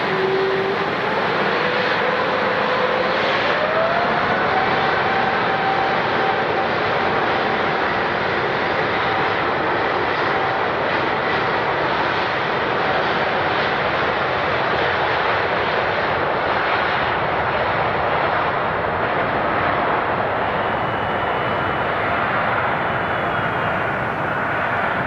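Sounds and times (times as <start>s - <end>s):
jet engines running: 0.0s - 25.0s.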